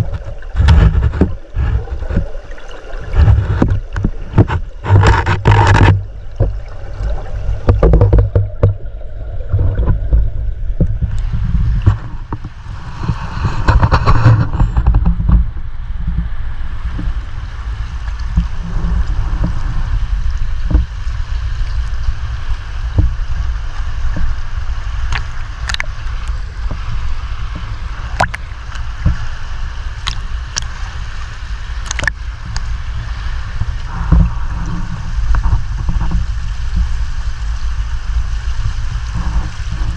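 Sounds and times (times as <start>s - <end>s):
underwater river current rumble: 0.0s - 39.9s.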